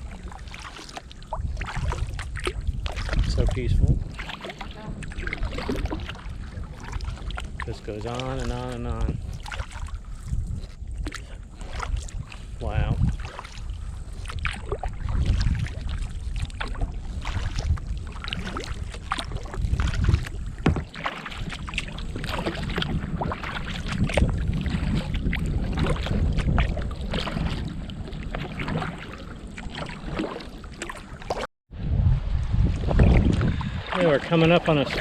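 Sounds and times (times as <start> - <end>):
paddle splashing in water: 0.0 - 31.5, 32.6 - 35.0
low rumble: 31.7 - 35.0.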